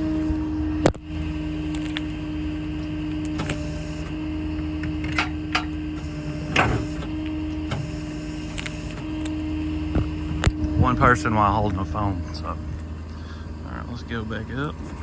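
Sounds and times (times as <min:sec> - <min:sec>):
crane hydraulics humming: 0:00.0 - 0:15.0
loud mechanical clunk: 0:04.8 - 0:09.2.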